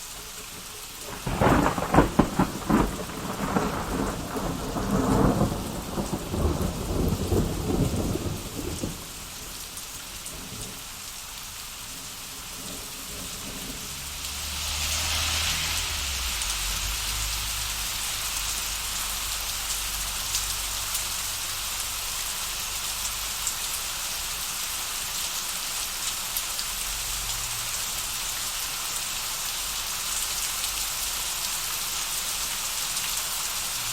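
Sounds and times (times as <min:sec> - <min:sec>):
steady rain: 0:00.0 - 0:33.9
thunder crackling and rumbling: 0:01.0 - 0:09.6.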